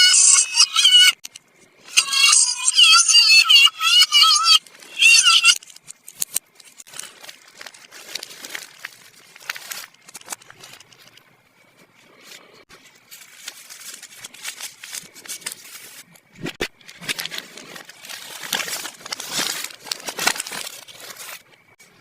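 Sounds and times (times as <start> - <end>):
plastic packaging crinkling: 4.6 - 11.4, 12.1 - 21.8.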